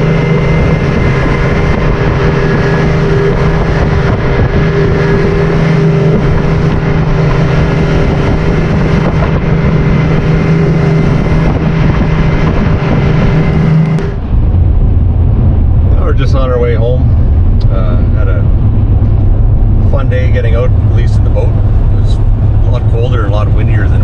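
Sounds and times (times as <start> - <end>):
boat motor hum: 0.0 - 16.2, 17.1 - 24.0.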